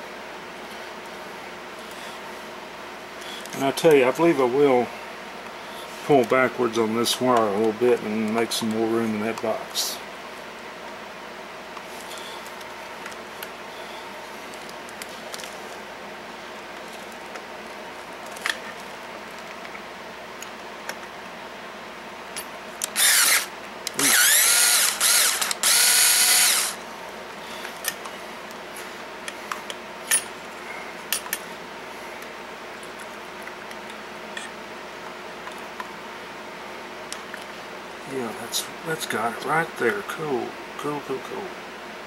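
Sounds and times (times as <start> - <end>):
power drill whining: 22.8 - 26.8.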